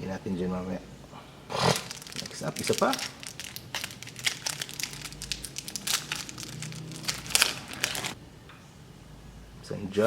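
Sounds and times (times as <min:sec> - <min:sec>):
foil wrapper crinkling: 0:01.6 - 0:08.2.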